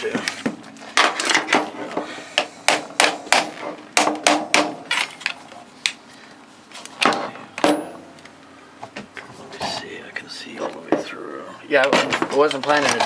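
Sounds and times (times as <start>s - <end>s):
sharp knocks on saw housing: 2.7s - 4.9s.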